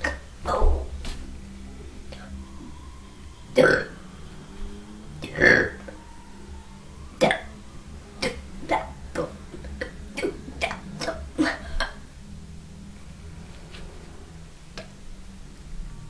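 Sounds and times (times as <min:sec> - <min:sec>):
person burping loudly: 0:03.6 - 0:04.0.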